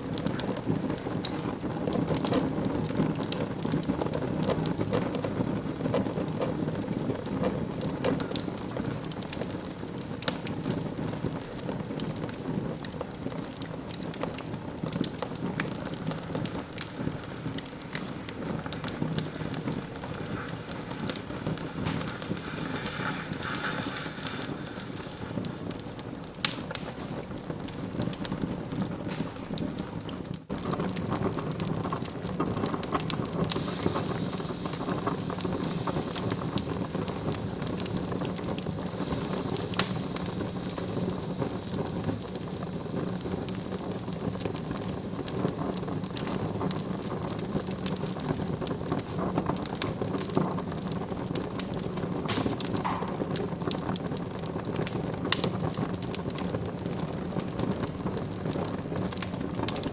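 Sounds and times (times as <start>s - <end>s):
wood fire crackling: 0.0s - 59.9s
sharp pop of fire: 13.4s - 48.8s, 49.8s - 56.2s.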